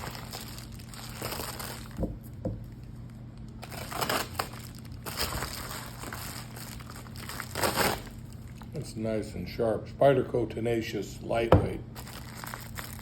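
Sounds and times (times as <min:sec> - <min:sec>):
parcel packaging crinkling: 0:00.0 - 0:02.1, 0:03.0 - 0:08.6, 0:12.0 - 0:13.0.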